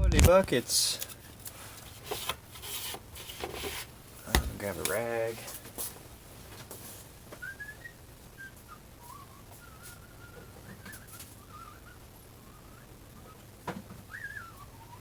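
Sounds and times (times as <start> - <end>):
low steady hum: 0.0 - 15.0
person whistling softly: 7.4 - 13.4, 14.1 - 15.0.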